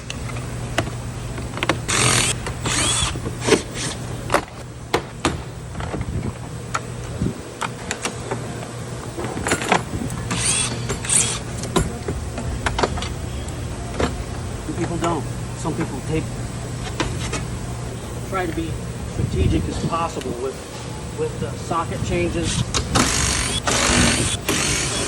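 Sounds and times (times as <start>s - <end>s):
power tool bursts: 1.8s - 4.0s, 10.3s - 11.6s, 22.7s - 25.0s.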